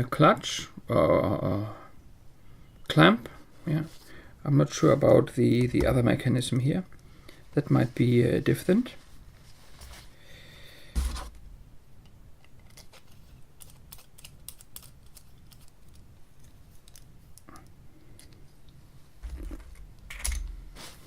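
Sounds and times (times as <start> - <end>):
bumps on desk: 11.0 - 11.4
pencil parts clicking on desk: 12.4 - 18.4.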